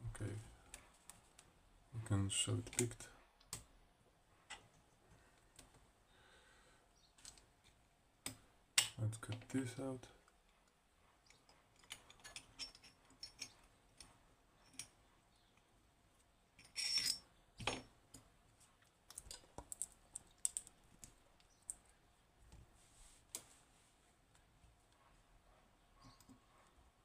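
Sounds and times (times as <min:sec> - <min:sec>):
lock-picking tools clicking: 0:11.2 - 0:15.0.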